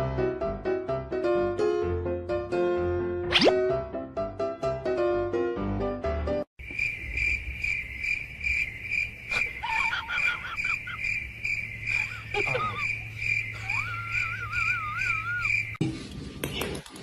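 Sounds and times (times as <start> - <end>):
music: 0.0 - 6.5
crickets chirping: 6.6 - 15.8.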